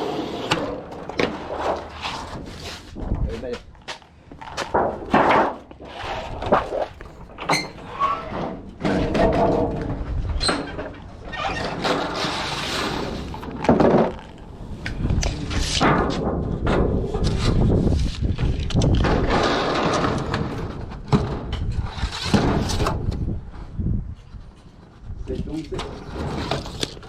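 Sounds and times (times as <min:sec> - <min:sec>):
metal thunks and clanks: 0:15.1 - 0:17.6.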